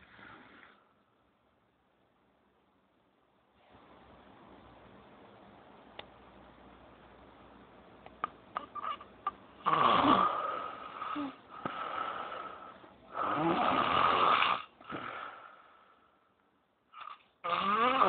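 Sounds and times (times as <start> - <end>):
soft breathing: 0.0 - 1.2, 10.2 - 13.7, 14.8 - 16.4
person snoring: 9.6 - 15.8, 17.0 - 18.0.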